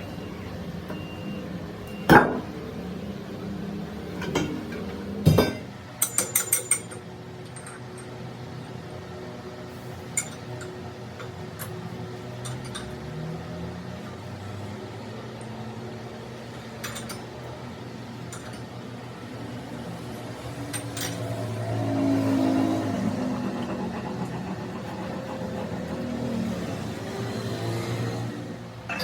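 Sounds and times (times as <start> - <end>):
engine humming: 19.6 - 28.9.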